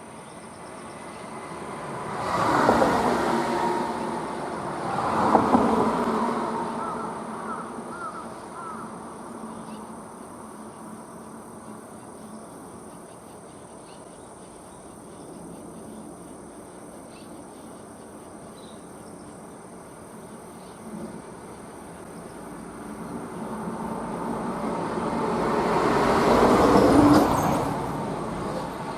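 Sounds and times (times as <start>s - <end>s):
vehicle passing: 1.0s - 8.0s, 22.4s - 28.9s.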